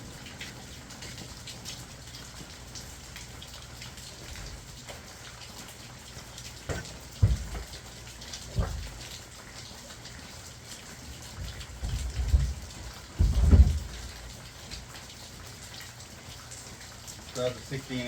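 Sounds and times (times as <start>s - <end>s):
steady rain falling: 0.0s - 18.0s
dull low thumps: 6.7s - 9.2s, 11.0s - 14.4s.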